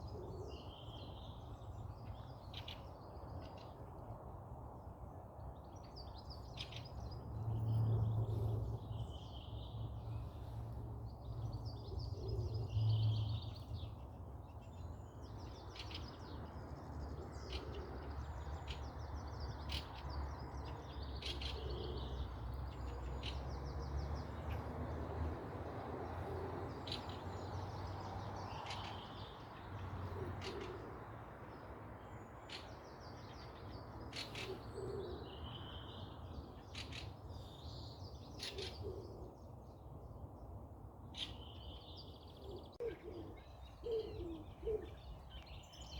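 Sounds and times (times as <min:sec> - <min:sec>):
birds chirping and trilling: 0:26.6 - 0:45.9.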